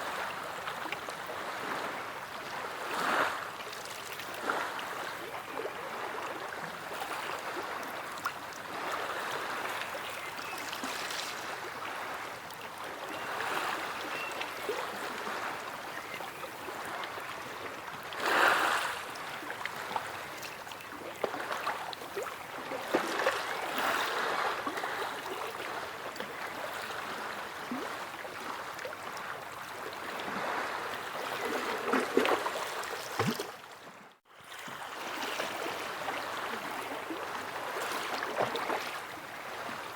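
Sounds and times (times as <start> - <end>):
sea waves breaking: 18.2 - 20.3.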